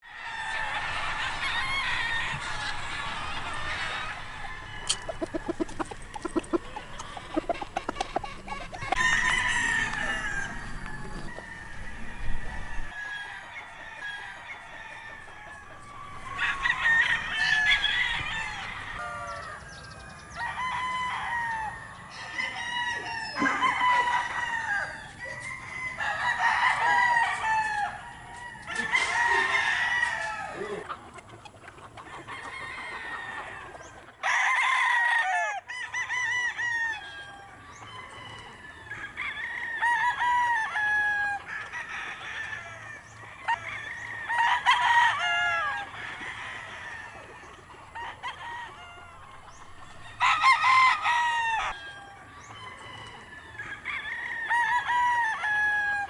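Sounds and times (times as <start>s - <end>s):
roosters crowing: 0.0s - 56.0s
chickens clucking: 0.1s - 34.6s, 35.2s - 56.0s.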